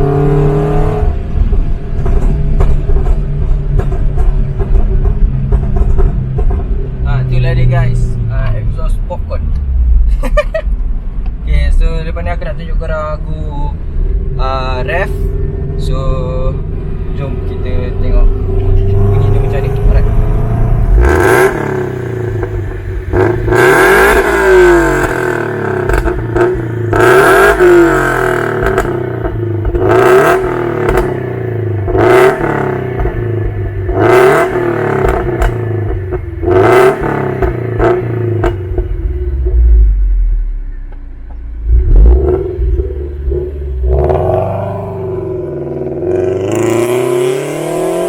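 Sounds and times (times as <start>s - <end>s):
car engine revving: 0.0s - 48.0s
exhaust pops and crackles: 1.1s - 9.7s, 17.4s - 44.6s.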